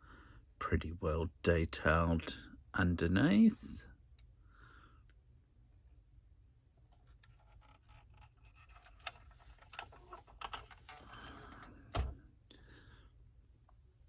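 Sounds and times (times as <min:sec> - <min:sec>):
model car clicking and rattling: 0:07.0 - 0:12.1.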